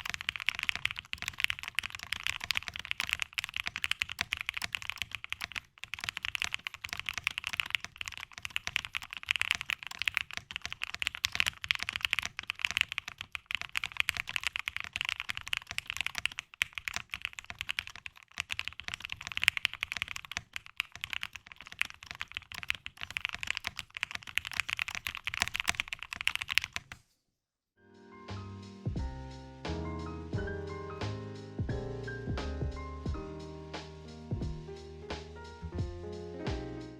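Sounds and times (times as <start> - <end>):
mechanical keyboard typing: 0.0 - 27.0.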